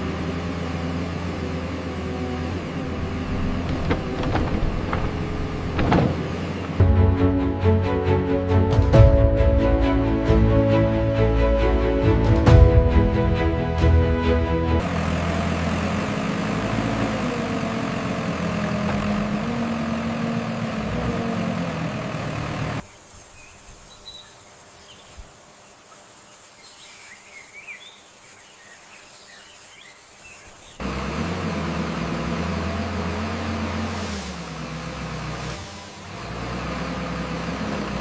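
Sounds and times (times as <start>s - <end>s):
diesel engine running: 0.0s - 22.9s, 30.8s - 38.0s
birds chirping: 17.0s - 30.8s.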